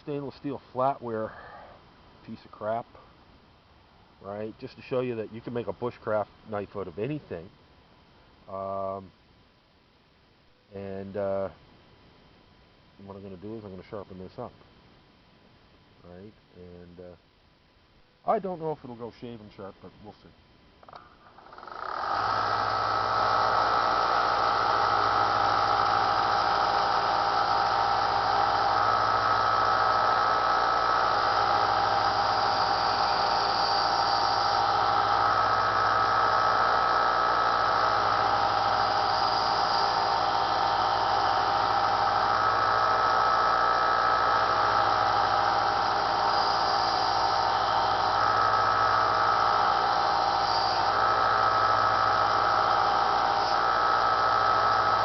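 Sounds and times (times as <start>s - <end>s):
belt sander whine: 20.8s - 55.0s
steel hissing on sanding belt: 31.0s - 55.0s.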